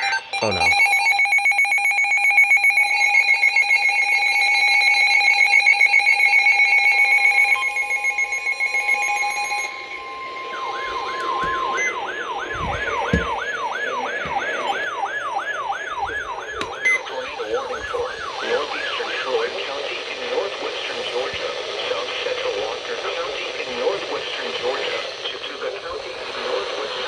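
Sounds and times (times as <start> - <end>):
two-tone alert signal: 0.0 - 4.0, 5.4 - 18.4
siren sweeping up and down: 0.0 - 19.5.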